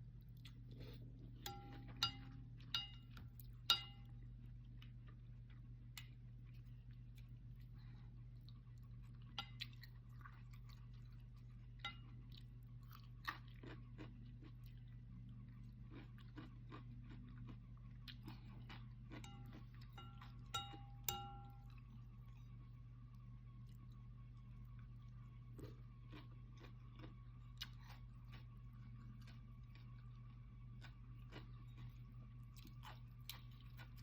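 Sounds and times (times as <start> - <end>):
steady low hum: 0.0 - 34.0
chewing and mouth clicks: 0.2 - 4.0, 4.6 - 22.4, 23.6 - 34.0
utensil clinking against bowl: 1.4 - 4.1, 19.2 - 21.7.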